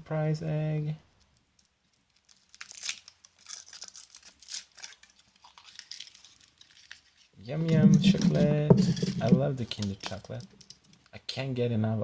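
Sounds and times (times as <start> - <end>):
foil wrapper crinkling: 2.1 - 7.3.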